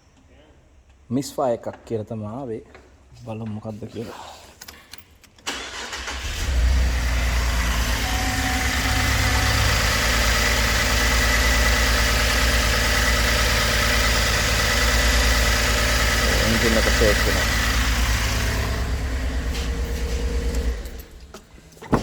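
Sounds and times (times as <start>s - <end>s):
car engine starting: 5.5s - 22.0s
car engine idling: 5.7s - 22.0s.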